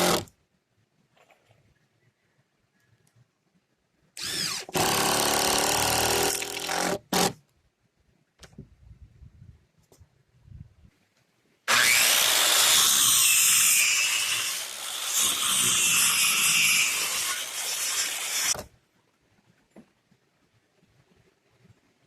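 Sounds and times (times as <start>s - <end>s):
power saw cutting wood: 0.0s - 0.3s, 11.7s - 18.6s.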